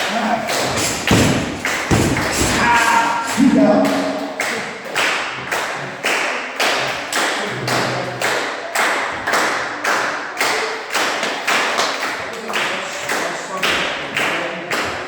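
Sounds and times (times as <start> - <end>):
audience clapping in unison: 3.8 - 15.0.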